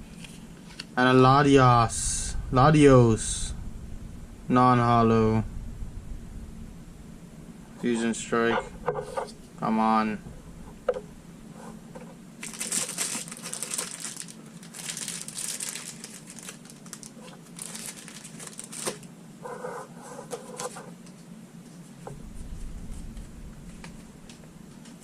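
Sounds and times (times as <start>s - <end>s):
foil wrapper crinkling and tearing: 12.4s - 19.1s.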